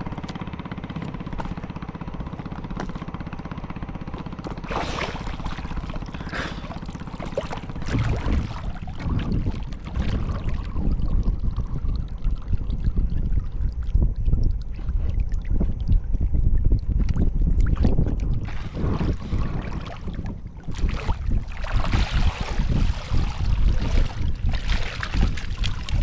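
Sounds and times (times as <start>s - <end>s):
boat engine idling: 0.0s - 15.5s
uneven low rumble: 1.0s - 26.0s
water pouring and splashing: 4.6s - 16.0s, 16.6s - 26.0s.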